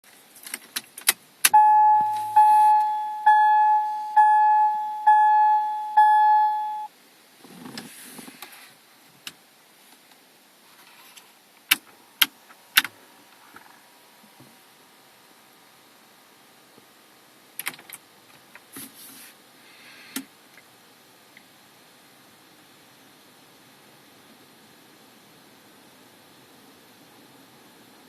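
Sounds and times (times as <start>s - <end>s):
dashboard warning chime: 1.5s - 6.9s.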